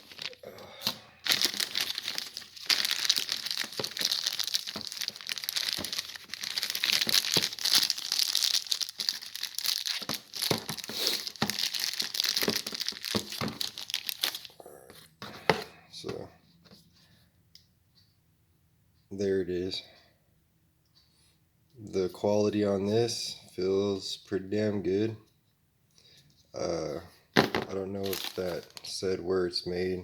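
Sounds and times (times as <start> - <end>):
packaging bag crinkling: 0.0 - 14.5, 28.0 - 28.9.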